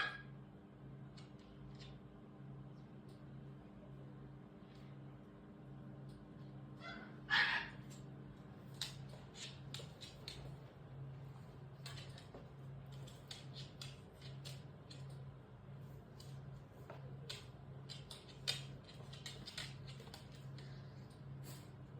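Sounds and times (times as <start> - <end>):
dog squealing: 0.0 - 0.3, 6.8 - 7.8
light clicks and taps: 8.7 - 10.7.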